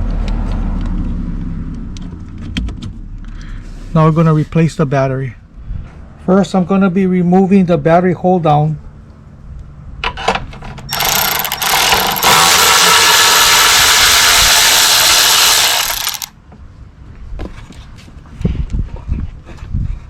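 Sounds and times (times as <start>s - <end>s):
cordless ratchet running: 10.9s - 16.3s
ratchet clicks: 10.9s - 16.3s.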